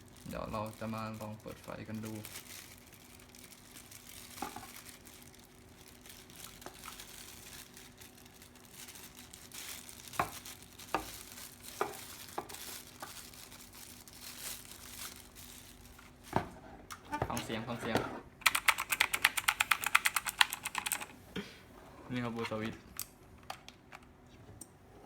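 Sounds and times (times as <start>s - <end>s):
plastic packaging crinkling: 0.0s - 17.7s.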